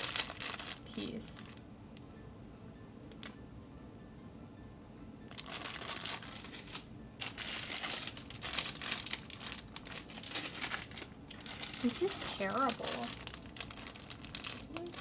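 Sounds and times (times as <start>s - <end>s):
plastic bags crinkling: 0.0s - 1.6s, 5.3s - 15.0s.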